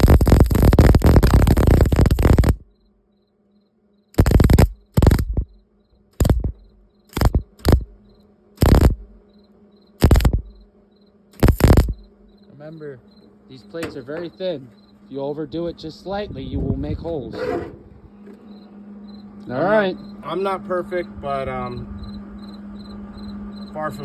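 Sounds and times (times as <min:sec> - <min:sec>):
welding arc crackling: 0:00.0 - 0:02.6, 0:04.2 - 0:05.5, 0:06.2 - 0:08.0, 0:08.6 - 0:09.1, 0:10.0 - 0:10.6, 0:11.4 - 0:12.0
faint steady hum: 0:00.0 - 0:24.0.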